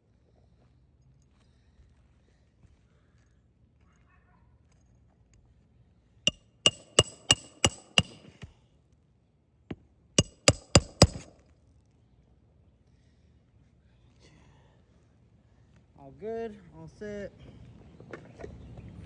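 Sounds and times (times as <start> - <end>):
light hammer tap: 6.3 - 8.5, 10.2 - 11.3
hammer striking roofing nails: 6.7 - 8.5, 10.2 - 11.3.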